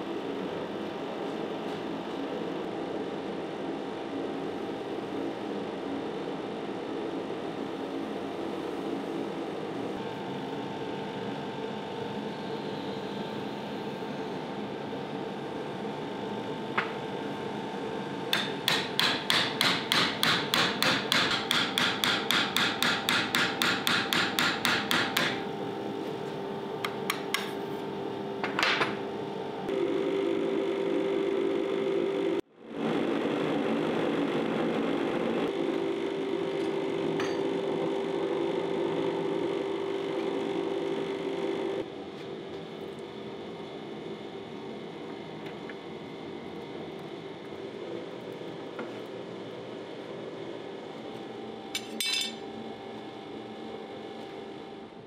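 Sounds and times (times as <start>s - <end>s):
mechanical hum: 0.0s - 55.0s.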